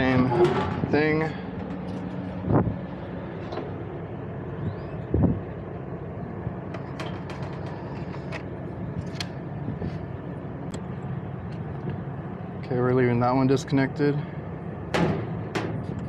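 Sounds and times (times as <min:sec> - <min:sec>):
air-conditioning hum: 0:00.0 - 0:16.0
loud thump: 0:15.0 - 0:15.9.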